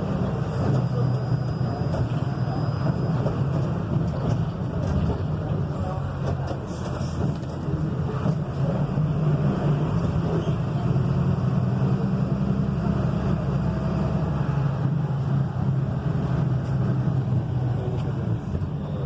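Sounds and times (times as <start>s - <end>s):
diesel truck engine running: 0.0s - 19.0s.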